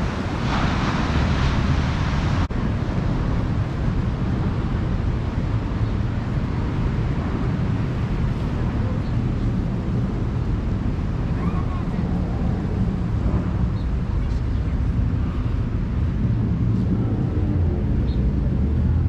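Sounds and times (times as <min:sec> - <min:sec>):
ocean surf: 0:00.0 - 0:19.0
wind buffeting microphone: 0:00.0 - 0:19.0.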